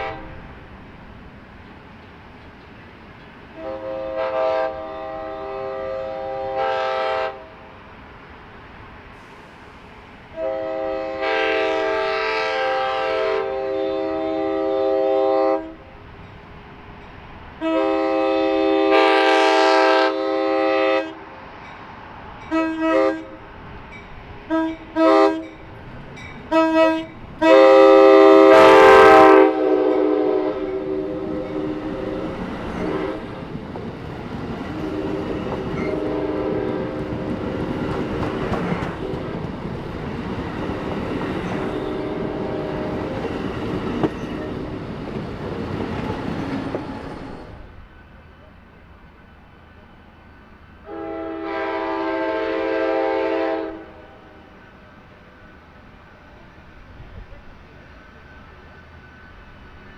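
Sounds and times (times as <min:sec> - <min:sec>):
locomotive air horn: 0:00.0 - 0:00.6, 0:03.6 - 0:07.7, 0:09.2 - 0:15.9, 0:17.6 - 0:21.2, 0:22.5 - 0:23.4, 0:24.5 - 0:25.5, 0:26.5 - 0:33.4, 0:34.7 - 0:37.4, 0:41.6 - 0:43.2, 0:50.8 - 0:54.4
train wheels clicking over rails: 0:30.5 - 0:47.7.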